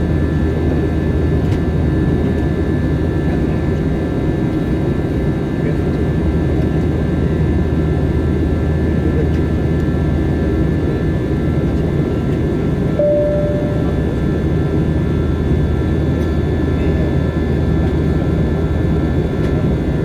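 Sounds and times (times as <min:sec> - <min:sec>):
short single beep: 0:13.0 - 0:14.1
faint high whines: 0:13.0 - 0:14.2.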